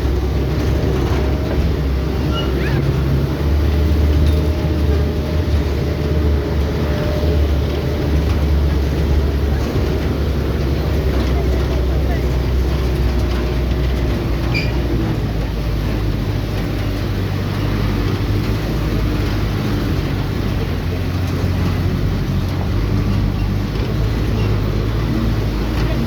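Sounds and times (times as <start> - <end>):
vehicle engine and road rumble: 0.0 - 26.0.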